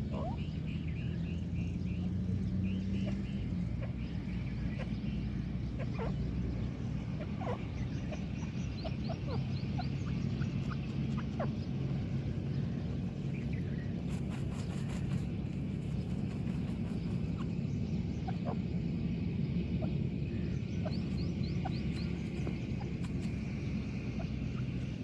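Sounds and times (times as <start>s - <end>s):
small birds chirping: 0.0s - 25.0s
steady low hum: 0.0s - 25.0s.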